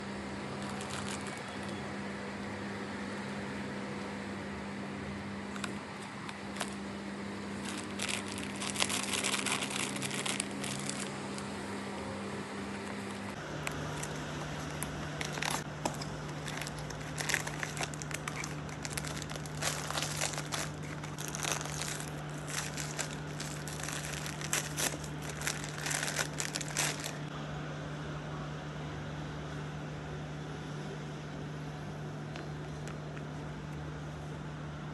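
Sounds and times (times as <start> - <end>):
steady low hum: 0.0 - 34.9
packaging crinkling: 0.6 - 1.8, 5.5 - 6.8, 7.6 - 11.6, 12.8 - 27.3.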